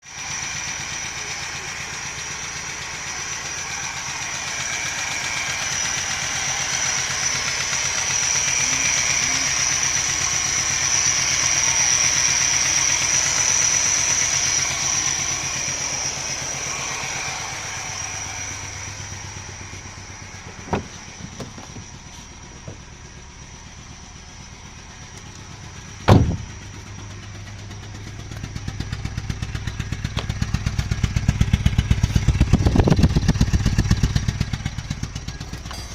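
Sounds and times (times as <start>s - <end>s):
engine running: 0.0s - 35.9s
high-pitched whine: 2.8s - 21.2s
loud sharp knock: 26.1s - 26.4s.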